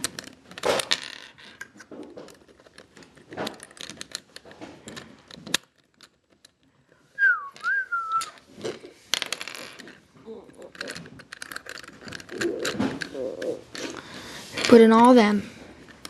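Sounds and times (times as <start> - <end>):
plastic puzzle cube pieces clicking: 0.0 - 6.7, 7.6 - 14.0
short whistle: 7.2 - 8.4.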